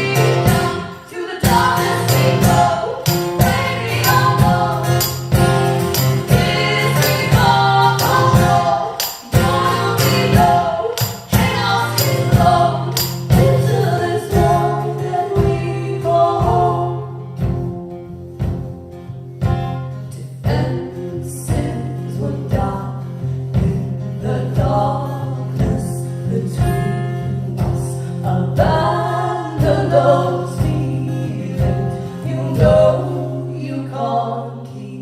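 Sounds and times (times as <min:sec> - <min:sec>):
regular beat: 0:00.0 - 0:13.7
guitar: 0:00.0 - 0:35.0.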